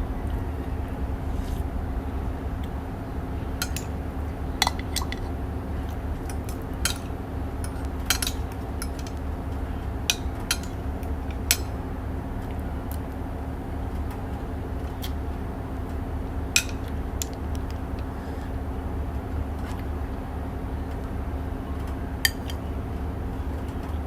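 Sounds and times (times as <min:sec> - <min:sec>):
steady low hum: 0:00.0 - 0:24.0
utensils clinking against dishware: 0:03.6 - 0:03.9, 0:04.6 - 0:05.3, 0:06.2 - 0:09.2, 0:10.1 - 0:11.7, 0:16.6 - 0:16.9, 0:22.3 - 0:22.6.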